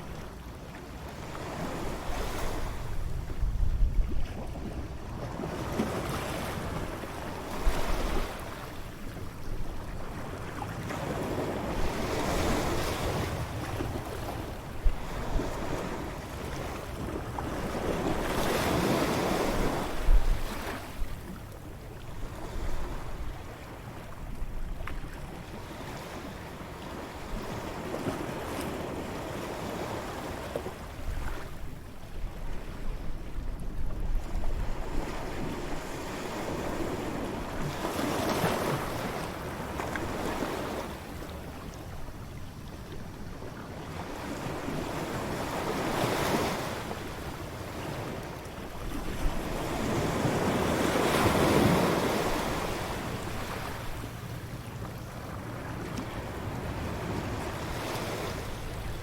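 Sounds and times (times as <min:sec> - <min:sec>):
wind buffeting microphone: 0:02.4 - 0:05.2
ocean waves breaking: 0:43.9 - 0:59.0.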